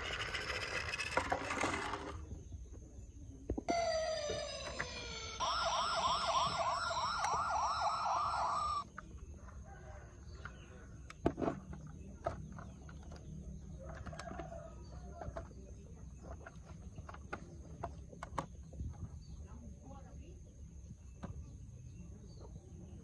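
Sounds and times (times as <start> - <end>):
toy police siren warbling: 3.7 - 9.0.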